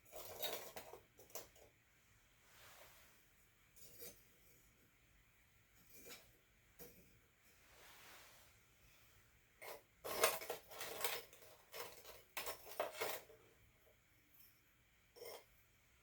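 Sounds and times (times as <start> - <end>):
metal utensils and charcoal clinking: 0.0 - 1.6, 3.8 - 4.6, 5.8 - 7.1, 9.6 - 13.5, 15.1 - 15.5.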